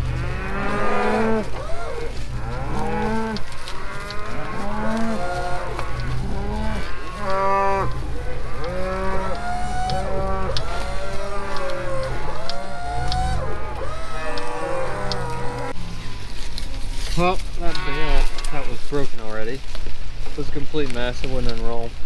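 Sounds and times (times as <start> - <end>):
steady low drone: 0.0 - 17.7
cattle mooing: 0.0 - 18.9.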